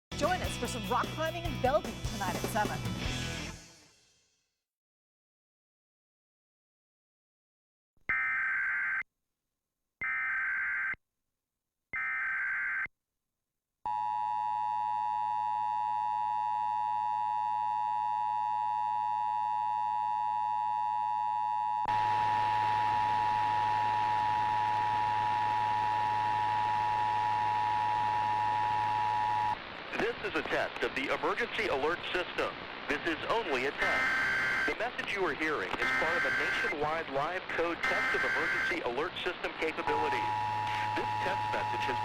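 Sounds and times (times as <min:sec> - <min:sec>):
steady two-tone alert signal: 0:33.8 - 0:34.8, 0:35.8 - 0:36.8, 0:37.8 - 0:38.8, 0:39.8 - 0:42.0
warbling digital data bursts: 0:33.8 - 0:34.8.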